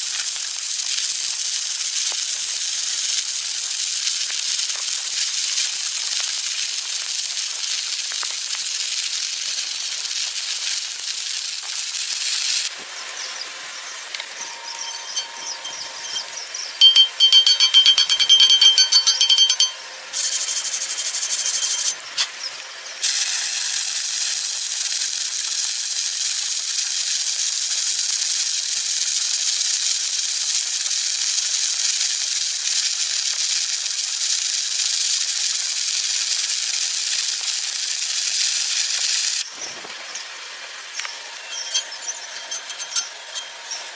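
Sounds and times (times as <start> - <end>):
welding arc crackling hiss: 0.0 - 43.9
loud high-pitched tone: 14.2 - 22.0.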